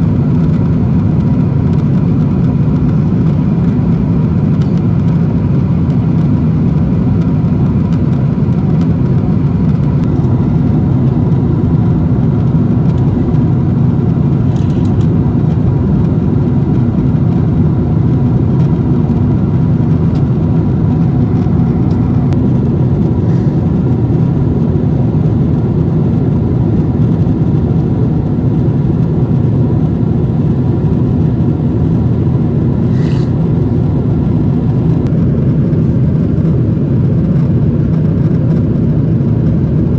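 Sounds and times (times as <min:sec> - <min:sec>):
aircraft cabin engine rumble: 0:00.0 - 0:39.9.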